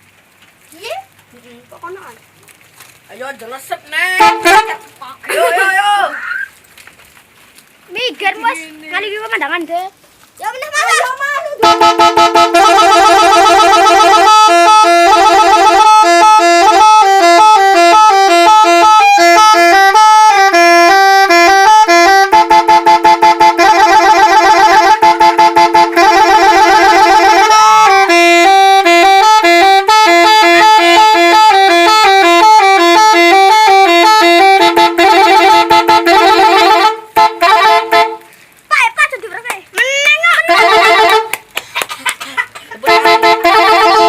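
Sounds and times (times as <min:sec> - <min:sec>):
multi-trumpet horn melody: 0:04.0 - 0:05.7, 0:10.8 - 0:38.4, 0:40.2 - 0:41.4, 0:42.7 - 0:44.0.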